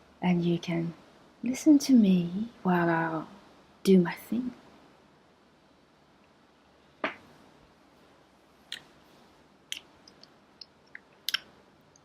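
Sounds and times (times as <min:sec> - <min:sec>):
mouth clicks and lip smacks: 0:08.7 - 0:08.9, 0:09.7 - 0:12.0.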